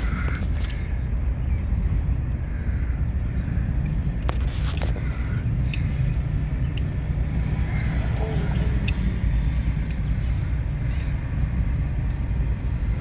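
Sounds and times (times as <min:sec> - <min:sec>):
freight train rumbling by: 0:00.0 - 0:13.0.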